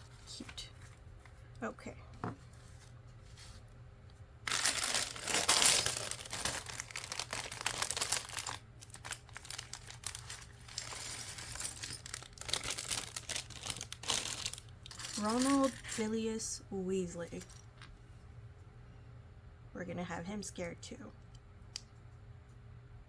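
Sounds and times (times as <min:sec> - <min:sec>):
plastic bag crinkling and tearing: 0:04.5 - 0:16.1
plastic pieces rummaged: 0:04.5 - 0:16.3, 0:17.3 - 0:17.9.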